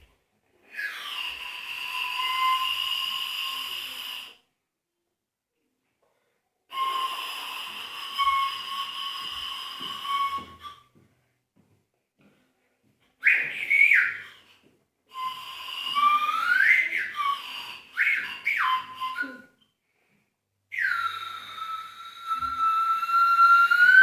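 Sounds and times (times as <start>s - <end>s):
whistling with upward pitch slides: 0.7s - 4.4s, 6.7s - 10.9s, 13.2s - 19.6s, 20.7s - 24.0s.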